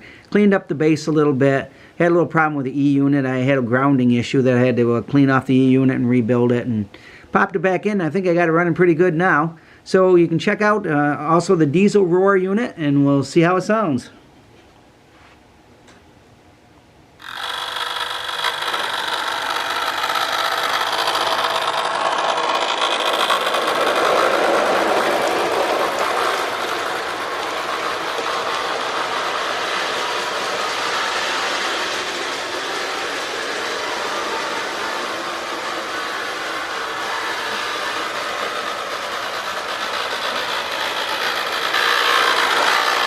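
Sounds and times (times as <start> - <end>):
toy locomotive rattling: 17.2 - 43.0.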